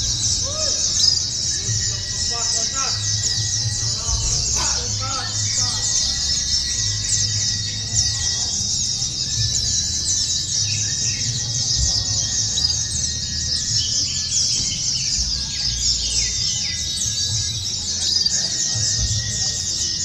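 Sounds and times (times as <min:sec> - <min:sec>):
low steady rumble: 0:00.0 - 0:13.7
birds chirping chorus: 0:00.0 - 0:20.0.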